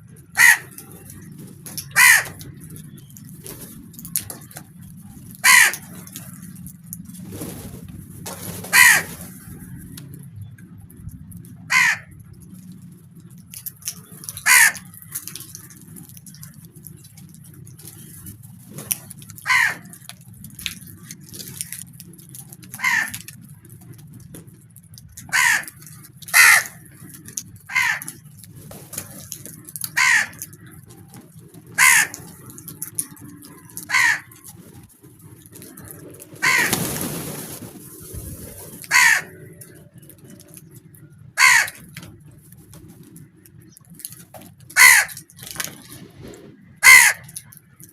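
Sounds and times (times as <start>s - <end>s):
low steady rumble: 0.0s - 47.9s
crows cawing: 0.3s - 2.6s, 5.4s - 6.3s, 8.7s - 9.2s, 11.6s - 12.2s, 14.1s - 15.7s, 19.4s - 20.0s, 22.6s - 23.3s, 25.2s - 27.0s, 27.6s - 28.3s, 29.6s - 30.8s, 31.7s - 34.6s, 35.7s - 36.8s, 38.8s - 39.8s, 41.0s - 42.0s, 44.6s - 45.4s, 46.8s - 47.6s.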